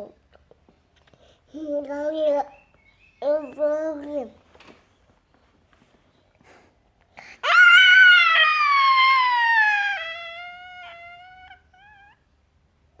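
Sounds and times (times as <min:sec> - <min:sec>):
toddler squealing: 0:07.4 - 0:12.2.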